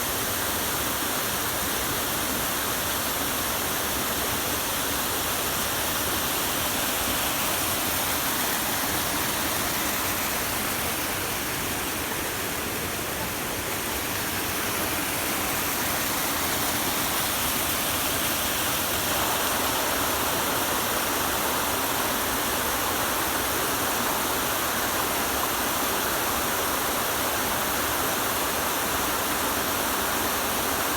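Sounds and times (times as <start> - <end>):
waterfall pouring: 5.6 - 21.8.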